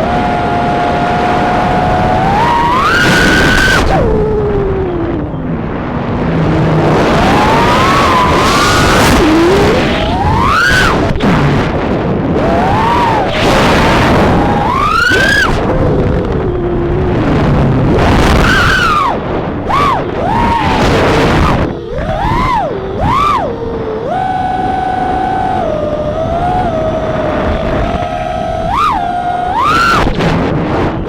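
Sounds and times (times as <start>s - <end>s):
quadcopter propellers whining: 0.0s - 11.2s, 12.3s - 30.2s.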